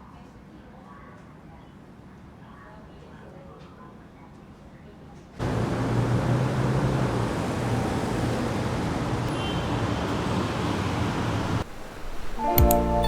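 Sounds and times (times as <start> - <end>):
road traffic hum: 5.4 - 13.0
soft background music: 12.2 - 13.0.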